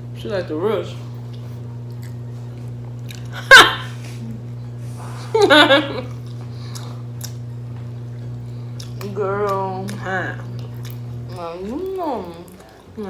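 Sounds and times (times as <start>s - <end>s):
woman laughing: 3.3s - 4.3s, 5.0s - 6.2s.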